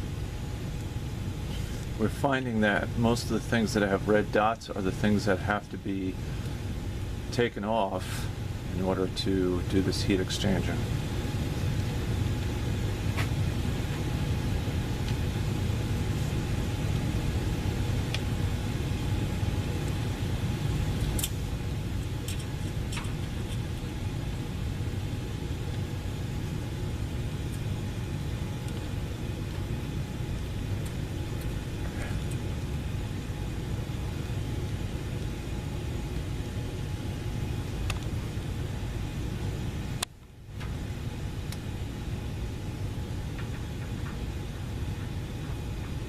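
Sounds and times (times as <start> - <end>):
faint hum: 0.0 - 46.0.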